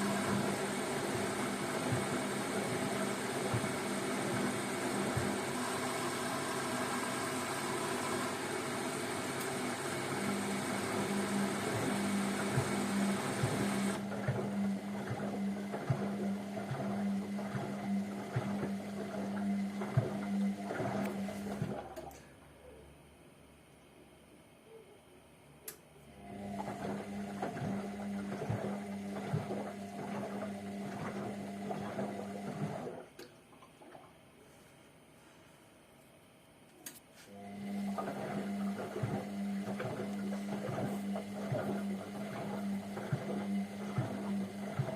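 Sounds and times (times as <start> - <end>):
washing machine hum and hiss: 0.0 - 44.9
laundry tumbling and water sloshing: 11.2 - 22.1, 26.4 - 34.2, 37.5 - 44.9.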